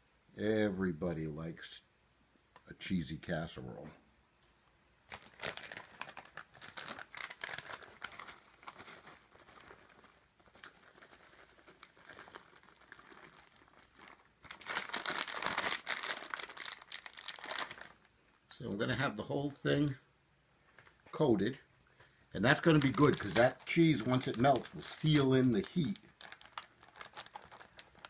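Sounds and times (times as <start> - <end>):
shredded cheese crinkling: 5.1 - 18.2, 22.4 - 28.0.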